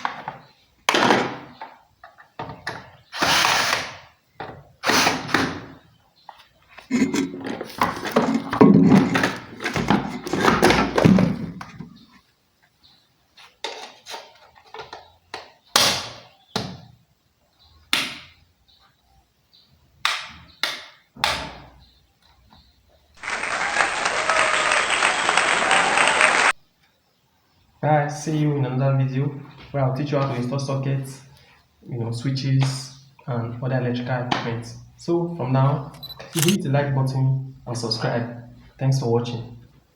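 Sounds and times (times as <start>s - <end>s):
power tool running: 23.2s - 26.6s.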